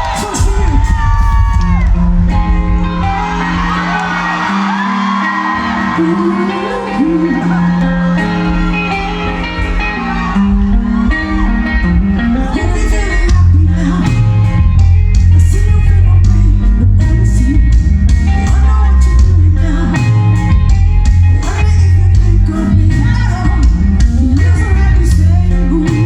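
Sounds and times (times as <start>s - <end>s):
crowd cheering and shouting: 0.0s - 26.0s
live rock band playing: 0.0s - 26.0s
long held bass notes: 0.7s - 26.0s.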